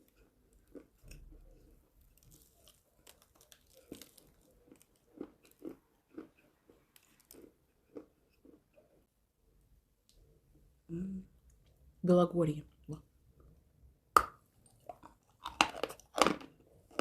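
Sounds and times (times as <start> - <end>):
person chewing chalk: 0.0 - 9.0, 14.6 - 17.0.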